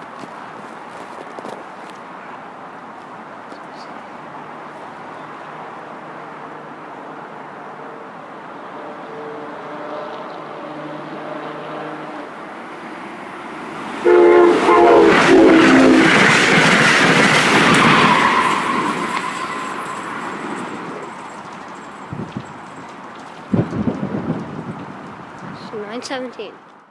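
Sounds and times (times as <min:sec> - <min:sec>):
train passing with rail clatter: 0:00.0 - 0:26.9
train horn blasts: 0:06.5 - 0:12.3, 0:14.0 - 0:16.2.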